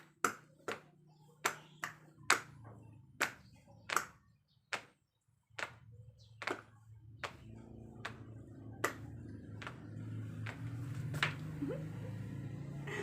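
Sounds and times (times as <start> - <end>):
sharp taps or claps: 3.2 - 5.0, 5.6 - 5.8, 6.4 - 11.4.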